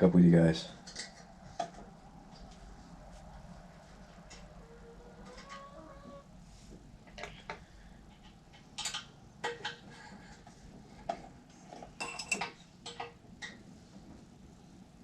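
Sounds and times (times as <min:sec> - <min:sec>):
hand tools and metal parts clinking: 0:12.0 - 0:13.2.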